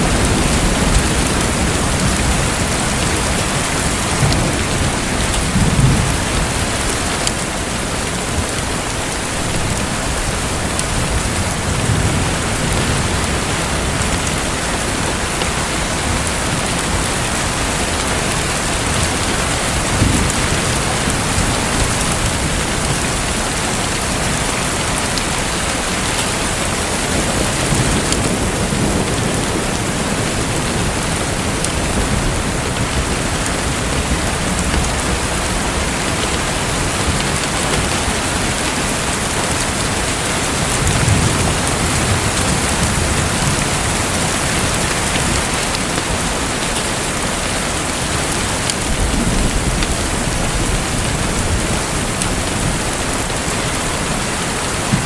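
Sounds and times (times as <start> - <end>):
low thunder rolls: 0.0 - 8.5.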